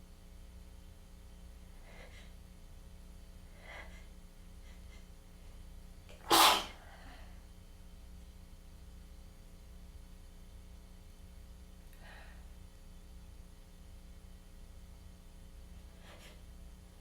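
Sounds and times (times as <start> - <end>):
person sneezing: 6.2 - 6.8.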